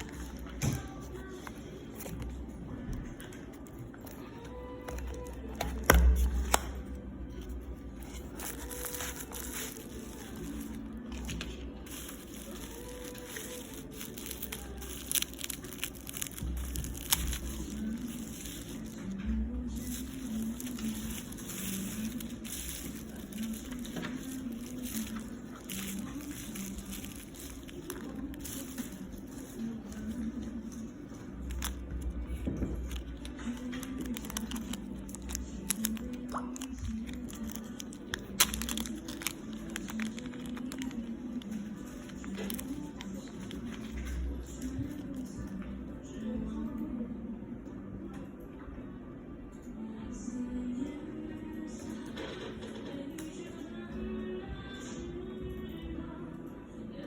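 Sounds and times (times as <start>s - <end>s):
plastic wrapping crinkling and tearing: 0.0s - 45.4s.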